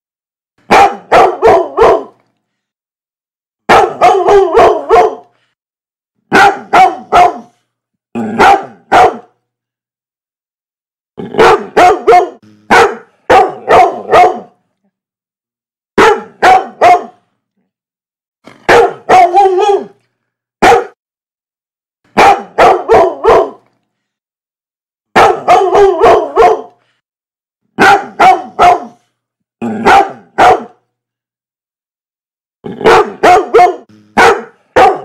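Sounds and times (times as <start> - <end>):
dog barking: 0.7 - 2.2, 3.7 - 5.3, 6.3 - 7.6, 8.4 - 9.4, 11.3 - 14.6, 16.0 - 17.2, 18.6 - 20.0, 20.6 - 21.0, 22.1 - 23.7, 25.1 - 26.8, 27.8 - 29.0, 29.8 - 30.8, 32.8 - 35.0.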